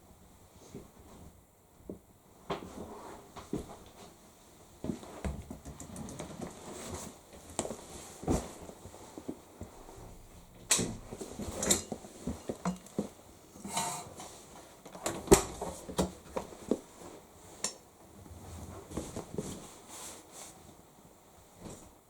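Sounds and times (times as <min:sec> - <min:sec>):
fabric rustling: 0:05.9 - 0:22.0.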